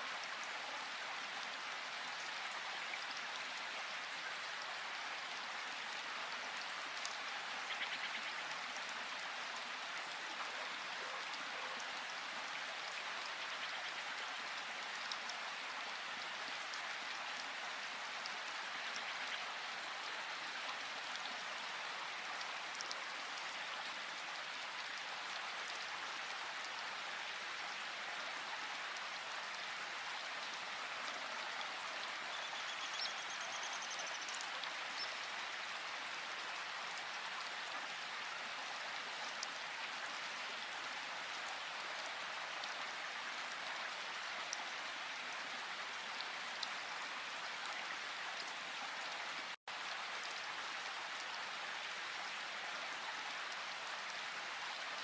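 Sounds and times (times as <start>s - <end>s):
rushing water of waterfall: 0.0s - 55.0s
faint bird chirps: 7.7s - 8.4s, 32.2s - 35.3s.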